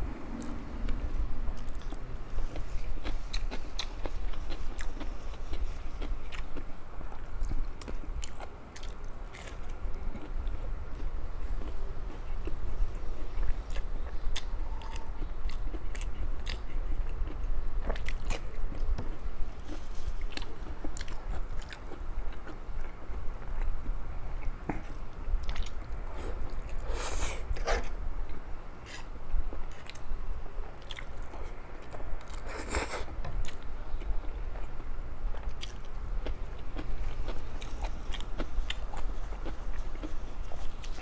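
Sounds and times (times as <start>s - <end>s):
low steady hum: 0.0s - 41.0s
person chewing and crunching: 1.5s - 12.6s, 13.3s - 23.8s, 30.7s - 41.0s.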